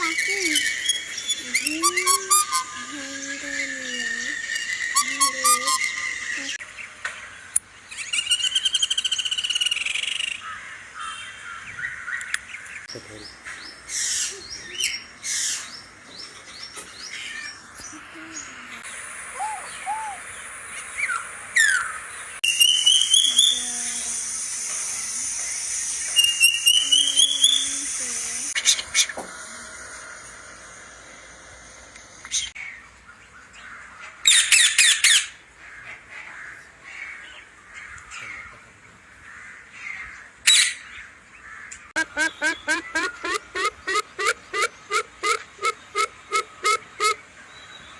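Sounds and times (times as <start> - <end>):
bird squawking: 0.0 - 6.6, 17.1 - 20.4, 42.0 - 47.3
soft short bird calls: 0.0 - 6.6, 17.1 - 20.3
birds chirping: 0.0 - 29.1, 36.3 - 47.9
steady whistled note: 1.7 - 3.0, 4.9 - 6.2.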